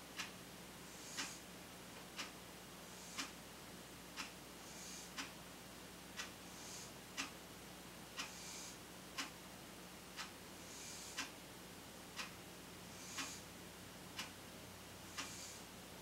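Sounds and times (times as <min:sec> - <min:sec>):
clock ticking: 0:03.1 - 0:03.4, 0:05.0 - 0:05.3, 0:07.2 - 0:07.4, 0:09.2 - 0:09.4, 0:10.2 - 0:10.4, 0:11.0 - 0:11.3, 0:12.2 - 0:12.4, 0:13.1 - 0:13.4, 0:14.2 - 0:14.4, 0:15.2 - 0:15.5.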